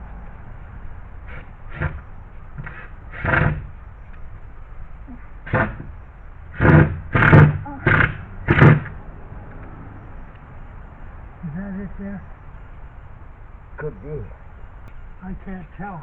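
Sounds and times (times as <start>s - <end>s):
steady low hum: 0.0s - 16.0s
man mumbling: 11.4s - 12.2s.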